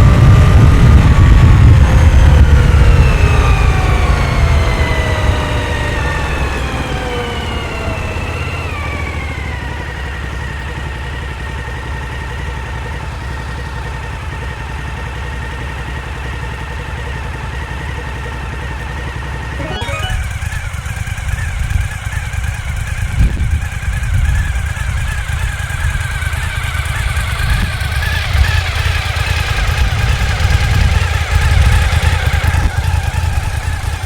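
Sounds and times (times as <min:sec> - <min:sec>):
motorcycle engine winding down: 0:00.0 - 0:11.2.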